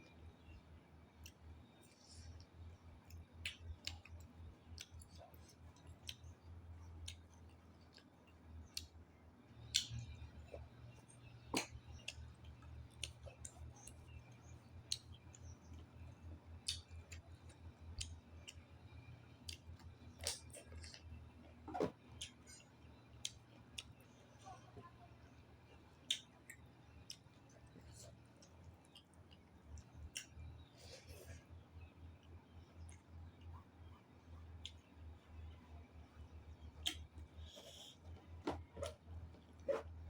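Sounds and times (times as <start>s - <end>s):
chewing with mouth clicks: 1.1s - 24.3s, 25.7s - 35.5s, 36.8s - 38.0s.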